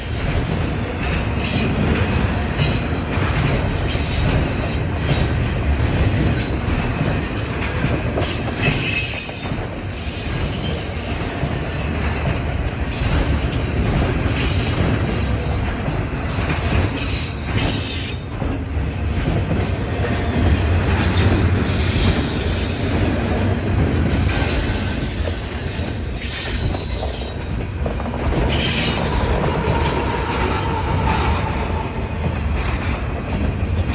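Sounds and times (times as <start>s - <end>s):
freight train rumbling on rails: 0.0s - 33.9s.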